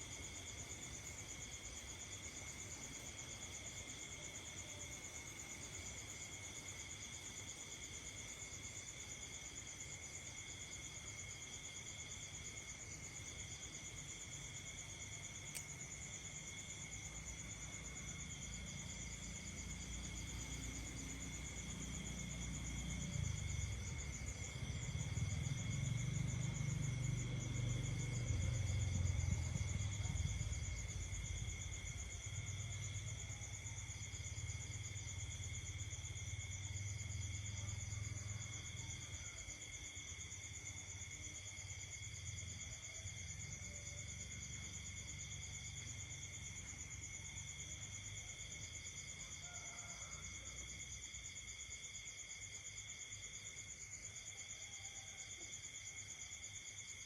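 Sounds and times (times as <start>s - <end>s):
crickets trilling: 0.0s - 57.0s.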